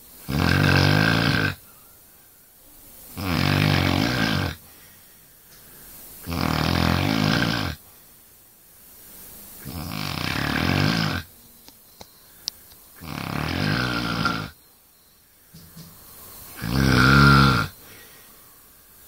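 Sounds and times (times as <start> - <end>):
person snoring: 0.2 - 1.6, 3.2 - 4.6, 6.2 - 7.8, 9.6 - 11.3, 13.0 - 14.6, 16.5 - 18.2
quiet breathing: 1.2 - 6.2, 7.7 - 9.7, 10.3 - 19.0.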